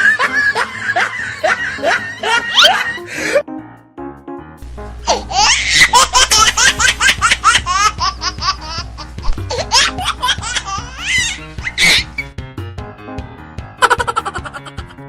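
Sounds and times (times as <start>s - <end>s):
high-pitched laughter: 0.0s - 3.4s, 5.1s - 8.8s, 9.5s - 12.2s, 13.8s - 15.0s
background music: 0.0s - 15.0s.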